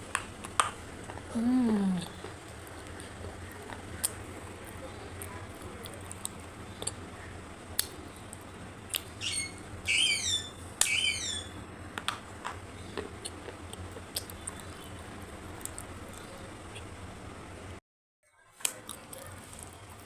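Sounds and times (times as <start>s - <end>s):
crunchy chewing: 0.1s - 7.1s, 12.8s - 16.9s, 18.6s - 20.0s
high falling chirps: 9.1s - 11.6s.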